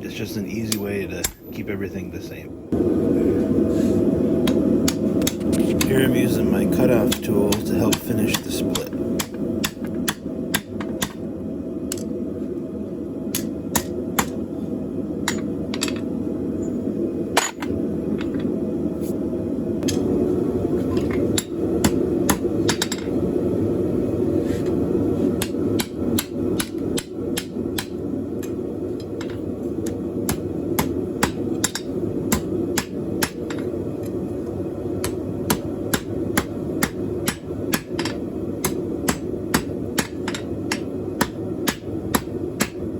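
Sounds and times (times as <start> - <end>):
hammer striking hot steel: 0.7 - 1.5, 4.4 - 11.2, 13.3 - 14.4, 15.2 - 16.0, 21.0 - 23.2, 25.4 - 33.7, 35.0 - 42.9.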